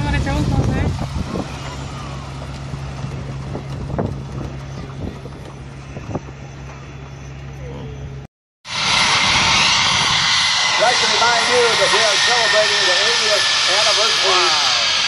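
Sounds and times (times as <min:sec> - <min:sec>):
wind buffeting microphone: 0:00.0 - 0:07.1, 0:07.7 - 0:13.0
low mechanical hum: 0:00.0 - 0:08.3.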